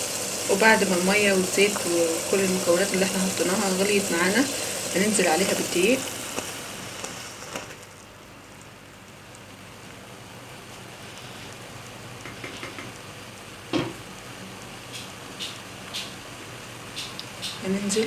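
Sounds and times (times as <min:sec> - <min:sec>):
pot of water boiling: 0:00.0 - 0:18.0
loud knock: 0:13.7 - 0:14.0.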